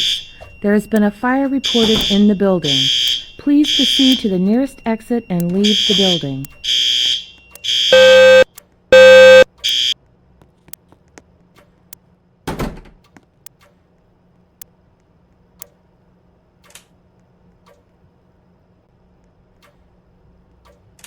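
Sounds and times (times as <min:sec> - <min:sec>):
fire alarm beeps: 0:00.0 - 0:10.0.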